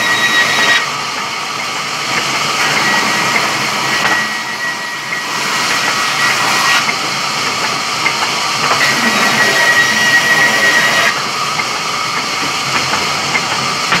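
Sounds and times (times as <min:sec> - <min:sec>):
saw cutting wood: 0:00.0 - 0:01.0, 0:02.6 - 0:12.0.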